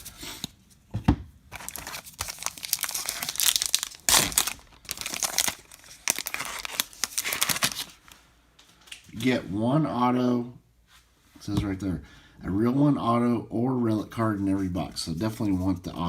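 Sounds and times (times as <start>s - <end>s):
card pack wrapper crinkling: 1.5s - 8.2s.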